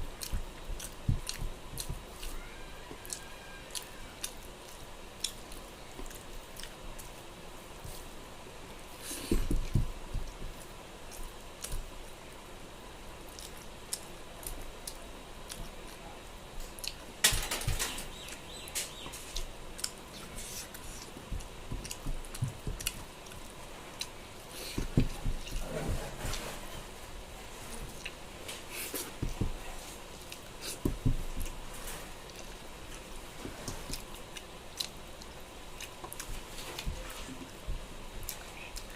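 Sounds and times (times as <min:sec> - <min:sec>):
wet chewing and mouth smacking: 0:00.1 - 0:07.2, 0:13.3 - 0:16.0, 0:16.6 - 0:17.1, 0:18.1 - 0:25.7, 0:32.2 - 0:38.9.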